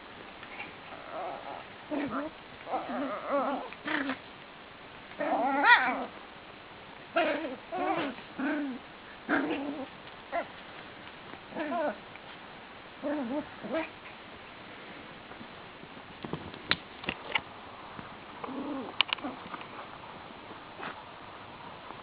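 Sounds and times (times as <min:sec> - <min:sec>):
dog whining and yowling: 0:00.9 - 0:04.2, 0:05.2 - 0:06.2, 0:07.2 - 0:10.5, 0:11.5 - 0:12.0.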